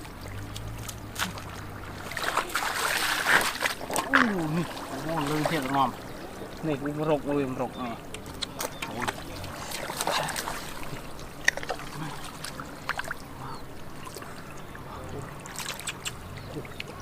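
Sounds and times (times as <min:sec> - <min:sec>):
muddy water sloshing and splashing: 0:00.0 - 0:17.0
sharp splash: 0:00.4 - 0:06.0, 0:08.5 - 0:13.2, 0:15.4 - 0:16.2.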